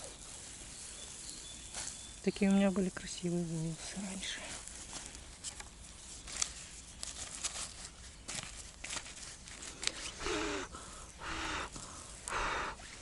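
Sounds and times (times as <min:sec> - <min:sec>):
campfire crackling and popping: 0:04.5 - 0:07.1
breathy hisses: 0:09.7 - 0:13.0.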